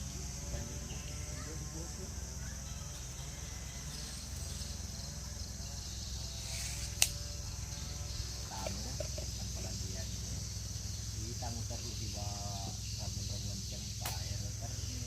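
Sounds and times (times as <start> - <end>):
faint voices: 0.0 - 4.3, 8.3 - 15.0
high insect chorus: 0.0 - 15.0.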